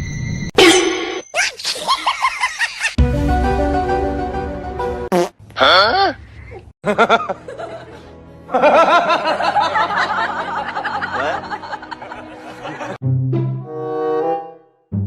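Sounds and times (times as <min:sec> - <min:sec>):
laughter: 0:01.4 - 0:03.0, 0:06.8 - 0:13.0
background music: 0:03.0 - 0:05.1, 0:06.8 - 0:15.0.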